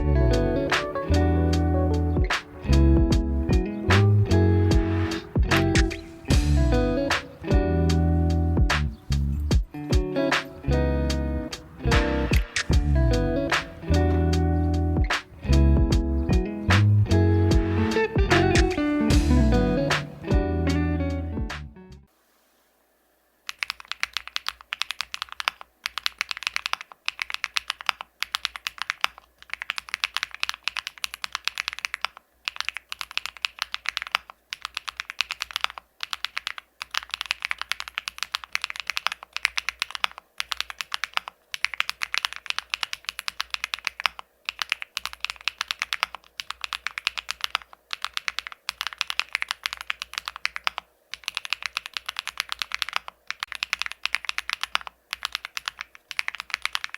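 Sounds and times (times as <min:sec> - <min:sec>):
mechanical keyboard typing: 0:23.5 - 0:56.9.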